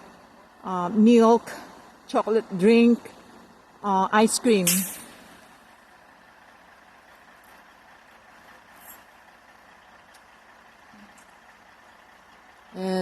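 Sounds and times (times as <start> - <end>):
heavy vehicle engine idling: 0.0 - 13.0.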